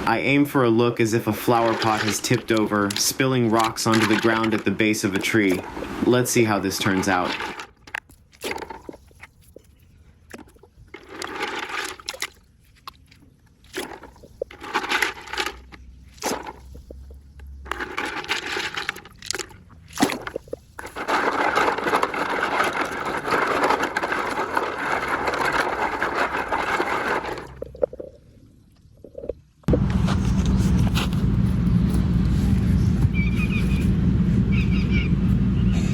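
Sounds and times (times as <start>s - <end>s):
rocks pouring onto mulch: 1.2s - 7.6s, 20.2s - 27.7s.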